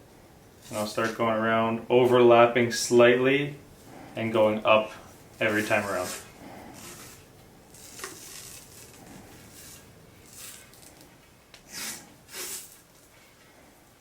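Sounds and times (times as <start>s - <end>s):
cloth tape peeling off roll: 5.5s - 13.2s.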